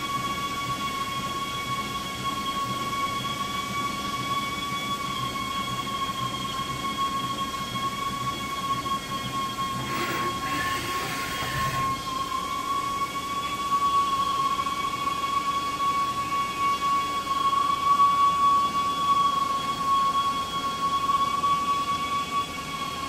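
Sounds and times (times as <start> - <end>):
lathe high-pitched whine: 9.0 - 12.6
scraping noise: 9.8 - 12.2.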